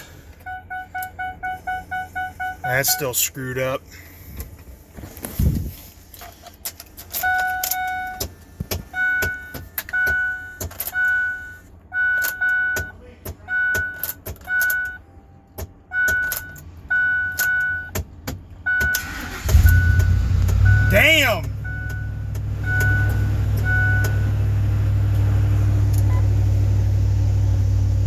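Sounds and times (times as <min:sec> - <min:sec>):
two-tone warning chime beeping: 0:00.4 - 0:03.3, 0:18.7 - 0:24.3.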